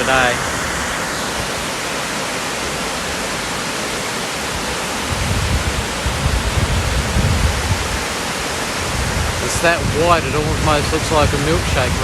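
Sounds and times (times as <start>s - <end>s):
waterfall rushing: 0.0s - 12.0s
low rumbling: 5.1s - 8.2s.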